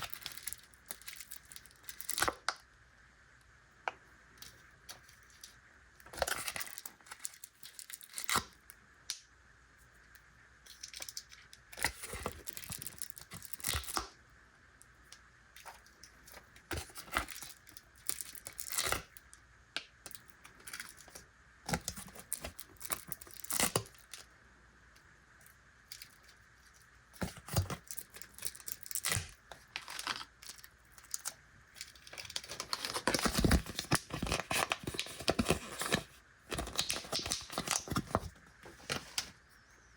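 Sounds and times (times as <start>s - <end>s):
plastic wrappers crinkling: 0.0s - 2.5s, 4.9s - 8.4s, 10.7s - 14.0s, 15.6s - 19.1s, 20.1s - 24.2s, 25.9s - 39.3s.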